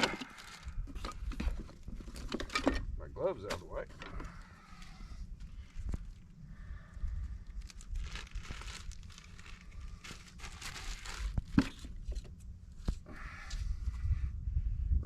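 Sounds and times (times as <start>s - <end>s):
packaging crinkling and tearing: 0.0s - 1.4s, 7.2s - 12.2s.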